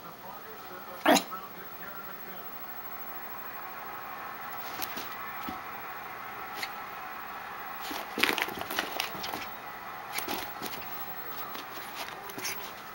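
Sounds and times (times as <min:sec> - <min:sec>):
dog scuffling clicks and rustles: 0:07.8 - 0:09.5, 0:10.1 - 0:12.9.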